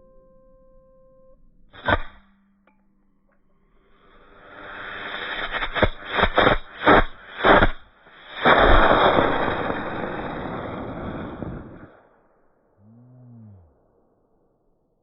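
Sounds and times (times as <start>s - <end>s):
rocket motor rushing burn: 3.9s - 12.1s
model rocket motor hissing and chuffing: 4.0s - 11.9s.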